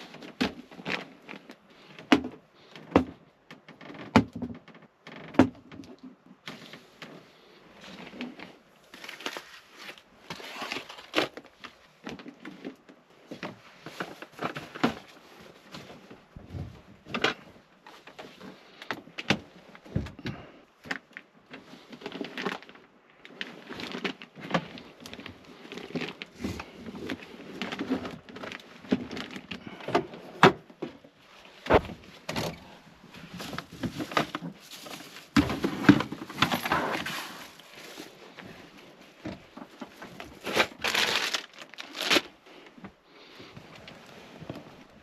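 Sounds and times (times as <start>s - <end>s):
rustling: 20.8s - 45.0s.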